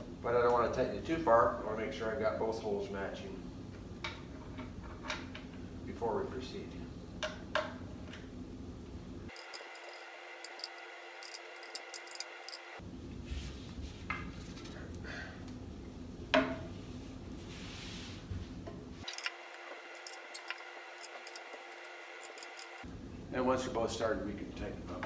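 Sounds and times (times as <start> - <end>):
metallic clicks and scrapes: 9.3 - 12.8, 19.0 - 22.8.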